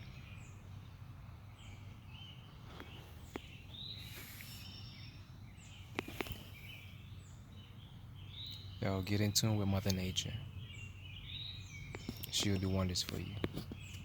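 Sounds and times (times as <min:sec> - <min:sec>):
wild birds chirping: 0:00.0 - 0:14.0.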